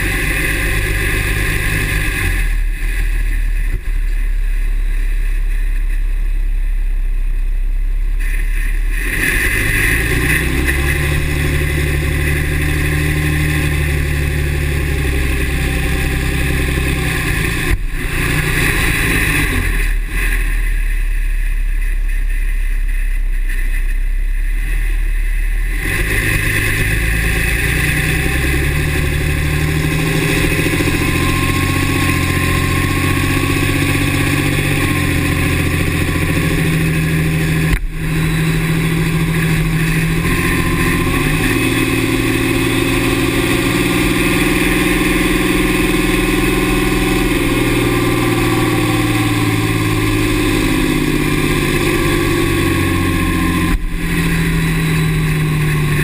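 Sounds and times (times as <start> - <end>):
diesel engine running: 0.0 - 56.0
faint high whine: 26.4 - 56.0.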